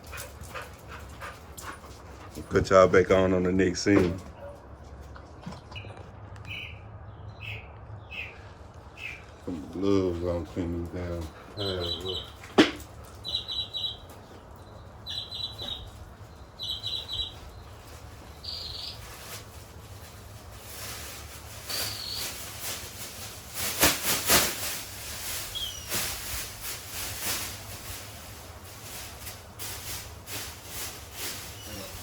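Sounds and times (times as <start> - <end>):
small bird chirping trills: 6.5 - 9.3, 13.2 - 19.1, 21.7 - 22.4.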